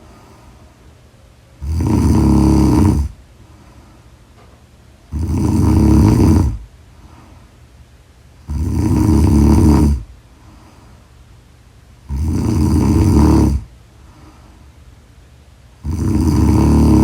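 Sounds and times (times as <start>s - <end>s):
person snoring: 1.6s - 3.2s, 5.1s - 6.6s, 8.4s - 10.1s, 12.1s - 13.7s, 15.8s - 17.0s.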